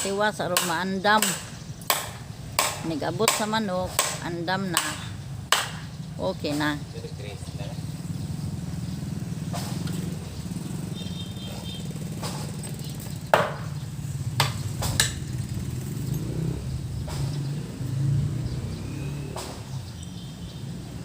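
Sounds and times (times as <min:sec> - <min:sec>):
sharp knocks: 0:00.0 - 0:05.9, 0:12.1 - 0:15.4, 0:17.0 - 0:17.5.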